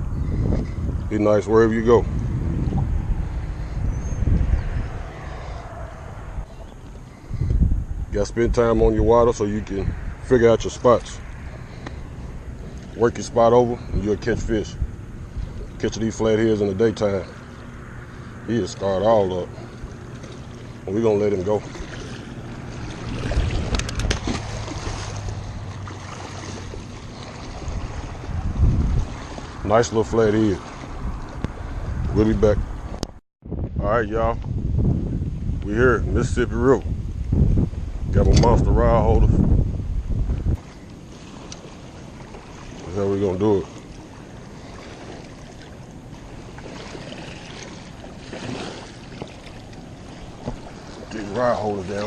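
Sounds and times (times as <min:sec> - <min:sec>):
wind on microphone: 0:00.0 - 0:52.0
water sloshing and splashing: 0:09.1 - 0:33.2, 0:40.2 - 0:52.0.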